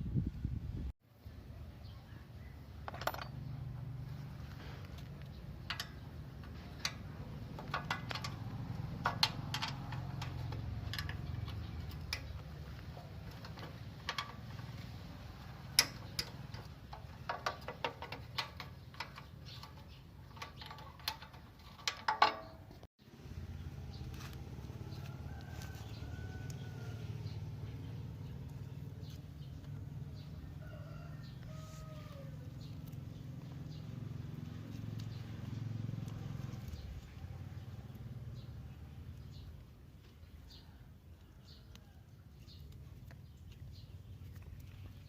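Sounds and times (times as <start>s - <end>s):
tools clicking and tapping: 5.0s - 14.9s, 15.5s - 22.7s.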